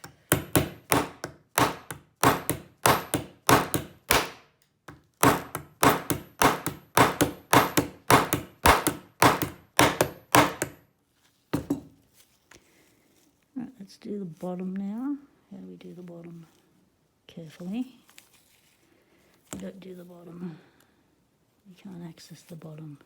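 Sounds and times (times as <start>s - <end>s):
hammer tapping blade into plastic: 0.0s - 10.8s.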